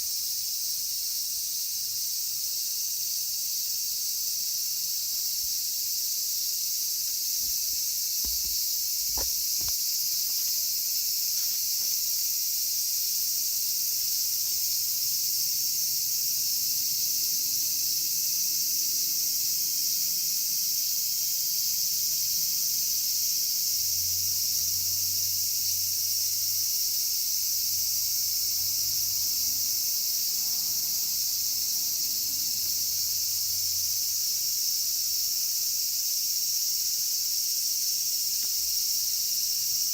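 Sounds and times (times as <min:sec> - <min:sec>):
cicadas singing: 0:00.0 - 0:39.9
faint taps: 0:07.4 - 0:09.8.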